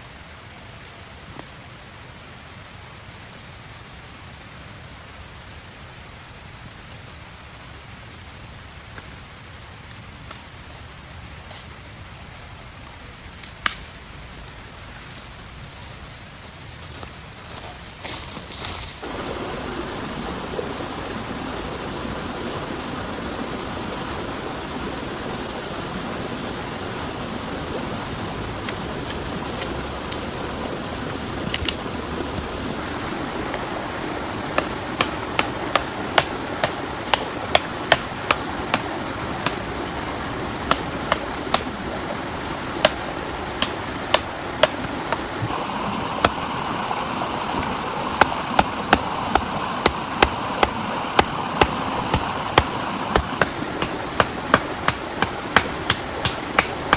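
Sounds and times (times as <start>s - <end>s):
heavy rain: 19.0s - 56.9s
sharp irregular taps: 34.5s - 39.7s, 40.7s - 41.8s, 47.6s - 56.9s.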